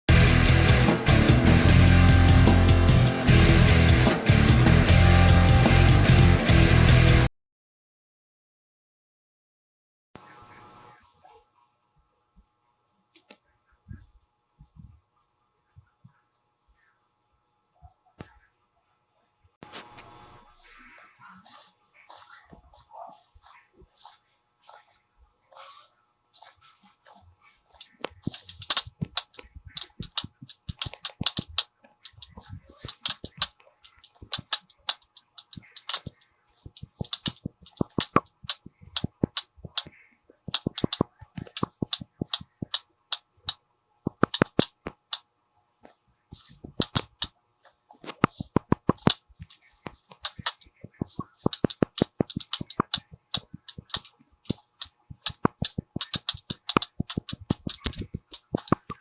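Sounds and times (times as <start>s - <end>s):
fingers tapping on hard surfaces: 27.8s - 39.9s, 40.5s - 43.2s, 44.1s - 45.2s, 46.4s - 47.3s, 48.1s - 59.0s.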